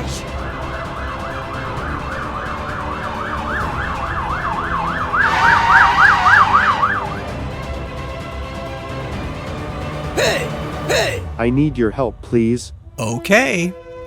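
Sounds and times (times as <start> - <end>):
emergency siren yelping: 0.0 - 7.6.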